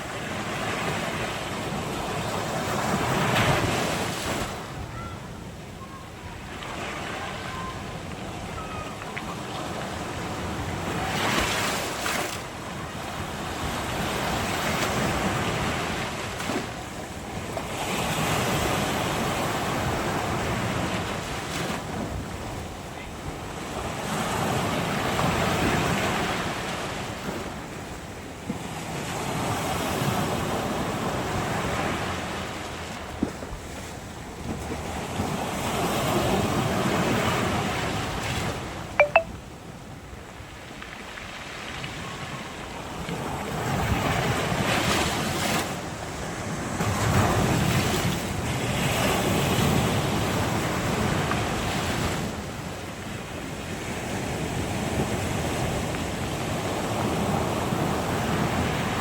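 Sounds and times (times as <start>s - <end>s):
sea waves breaking on shore: 40.3s - 59.0s.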